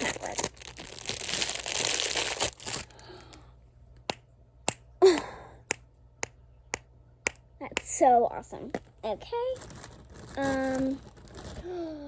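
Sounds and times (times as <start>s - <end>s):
plastic packaging crinkling: 0.0s - 3.4s, 9.1s - 11.9s.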